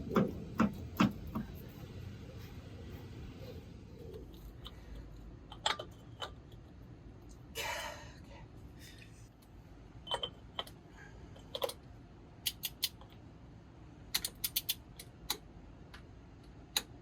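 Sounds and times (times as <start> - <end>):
clicks and taps on metal parts: 0.1 - 1.6, 12.4 - 13.2, 14.1 - 17.0.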